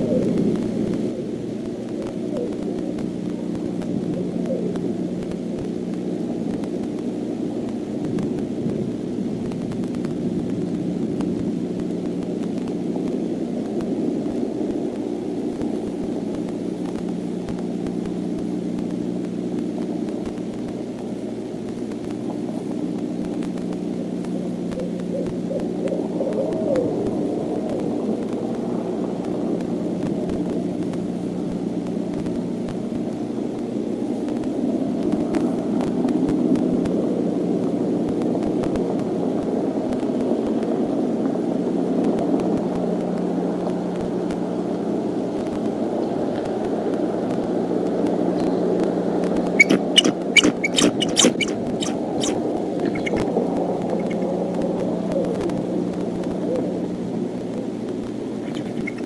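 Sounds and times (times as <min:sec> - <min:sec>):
owl hooting: 0:00.0 - 0:01.3, 0:01.9 - 0:02.7, 0:24.8 - 0:27.0, 0:49.4 - 0:53.3, 0:58.4 - 0:59.0
low hum: 0:48.4 - 0:59.0.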